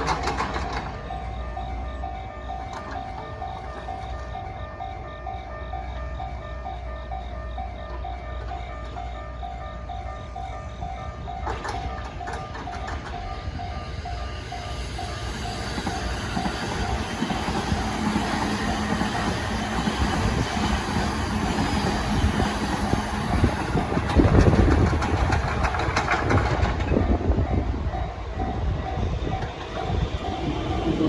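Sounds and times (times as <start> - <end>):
wheel clacks over rail joints: 0.0 - 1.2, 11.4 - 13.4, 15.7 - 31.0
train rumble: 0.0 - 31.0.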